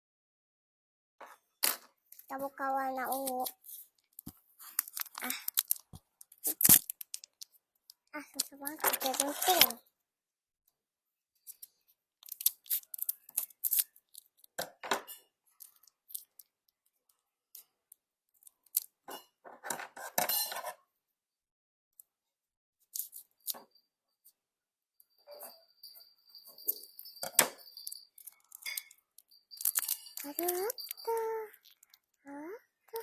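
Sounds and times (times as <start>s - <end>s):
plastic packaging crackling and snapping: 3.1s - 9.8s, 12.2s - 14.5s, 29.6s - 31.0s.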